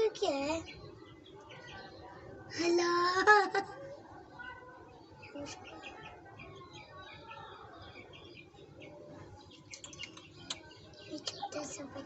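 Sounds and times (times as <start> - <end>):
chick peeping: 3.2 - 12.0.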